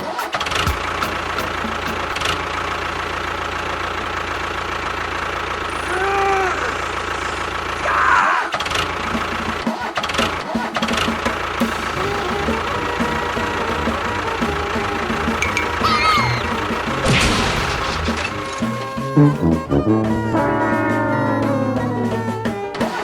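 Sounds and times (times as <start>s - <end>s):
rising and falling tone: 18.6s - 22.8s.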